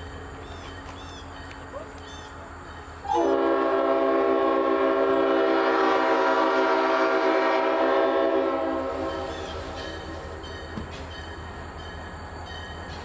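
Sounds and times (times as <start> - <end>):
locomotive air horn chord: 3.1 - 10.2.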